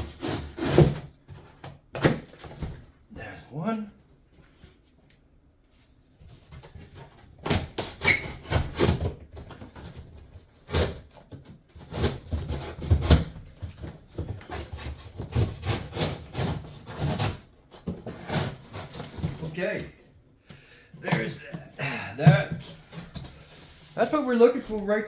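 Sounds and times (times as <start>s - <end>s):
cardboard box being cut: 0.0s - 1.1s, 14.5s - 17.4s, 18.0s - 19.5s.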